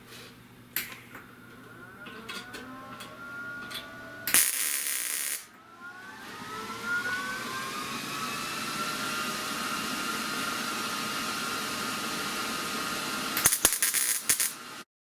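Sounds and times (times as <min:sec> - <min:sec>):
small motor whining: 0:01.5 - 0:11.9.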